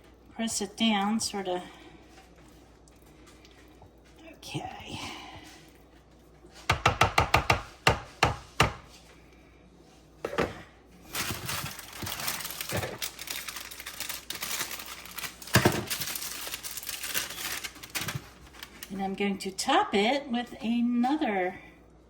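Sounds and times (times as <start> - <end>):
utensil knocking against dish: 6.7 - 8.9
scraping and rustling: 11.1 - 19.0.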